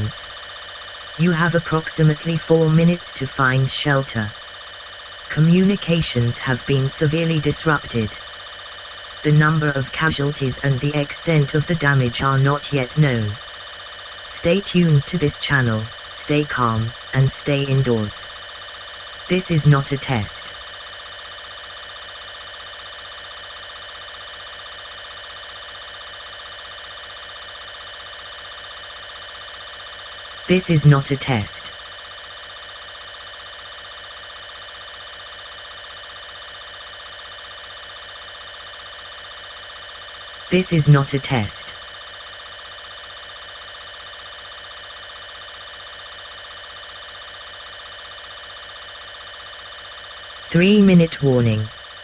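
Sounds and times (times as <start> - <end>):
electronic alarm drone: 0.0 - 52.0.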